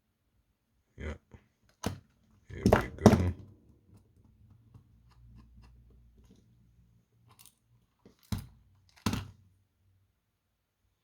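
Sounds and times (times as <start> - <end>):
small metallic clicks and scrapes: 7.2 - 9.2.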